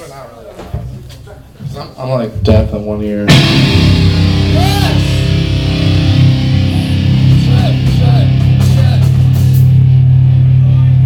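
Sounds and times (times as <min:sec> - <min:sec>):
distorted electric guitar chord: 0:03.3 - 0:11.0.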